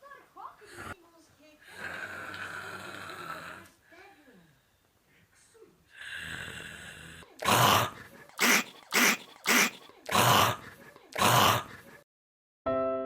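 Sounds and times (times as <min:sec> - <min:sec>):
loud rasping snorts: 0:06.4 - 0:10.6, 0:11.2 - 0:11.7.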